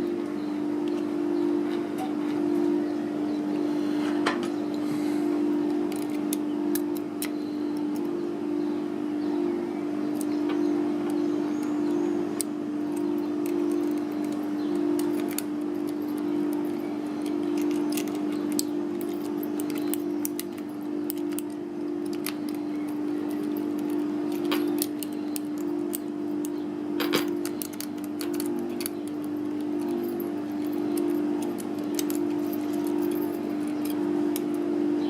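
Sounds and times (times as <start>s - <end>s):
low hum: 0.0s - 35.0s
lock pick clicking and scraping: 5.7s - 8.1s, 12.4s - 34.6s.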